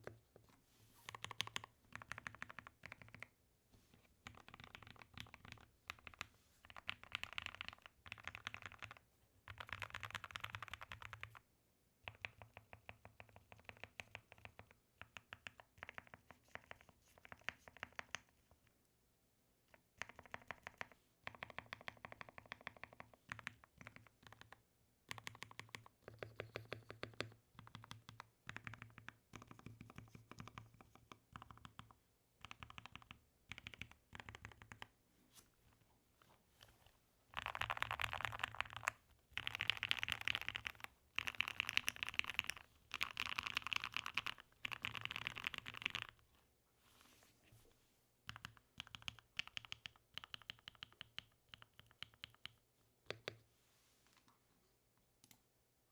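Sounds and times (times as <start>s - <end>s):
mechanical keyboard typing: 1.1s - 3.3s, 4.2s - 11.4s, 12.1s - 18.4s, 20.0s - 34.9s, 37.4s - 46.2s, 48.3s - 53.3s.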